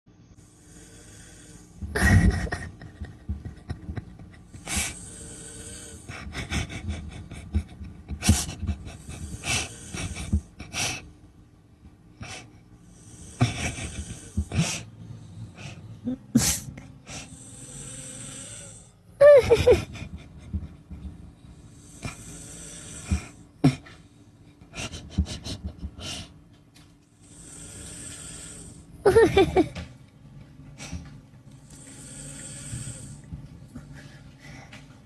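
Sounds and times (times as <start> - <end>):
person snoring: 0.4 - 11.0, 12.2 - 20.2, 21.5 - 24.0, 27.2 - 29.6, 31.6 - 33.3.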